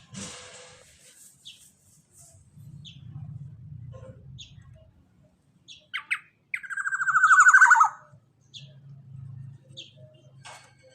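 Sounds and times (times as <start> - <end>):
bird calling with harsh trill: 5.7 - 8.8.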